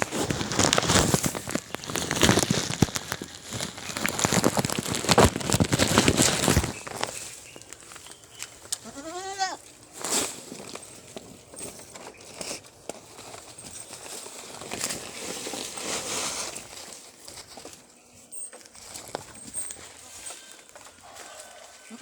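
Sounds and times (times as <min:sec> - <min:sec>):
rustling in dry vegetation: 0:00.0 - 0:22.0
goat bleating: 0:08.8 - 0:09.7.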